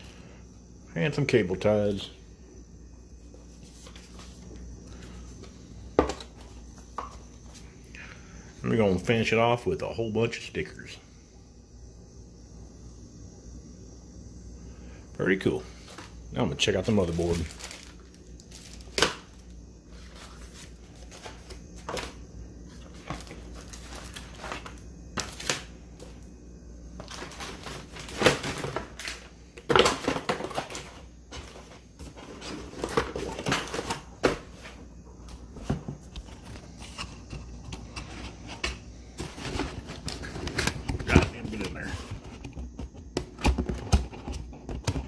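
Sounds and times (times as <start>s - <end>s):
packaging scraping: 16.9s - 19.1s.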